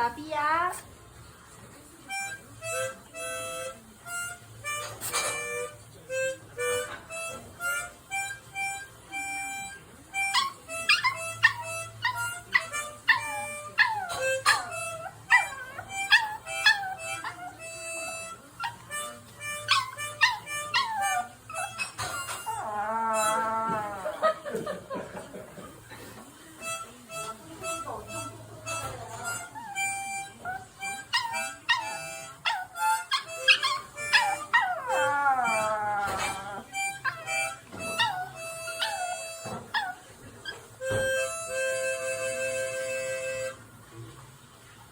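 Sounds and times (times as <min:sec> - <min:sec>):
harmonica playing slow melody: 0:02.1 - 0:24.1, 0:26.6 - 0:39.6, 0:40.8 - 0:43.7
puppy howling and yipping: 0:10.2 - 0:24.2, 0:29.6 - 0:40.6.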